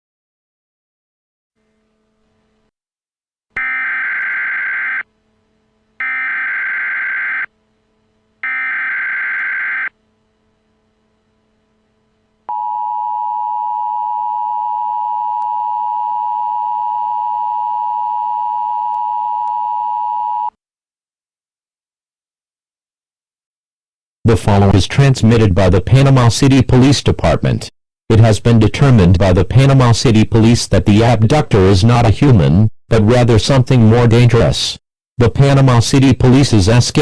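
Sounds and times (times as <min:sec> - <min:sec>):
alert header tone bursts: 0:03.6 - 0:05.0
two-tone attention signal: 0:03.6 - 0:05.1, 0:06.0 - 0:07.5, 0:08.4 - 0:09.9.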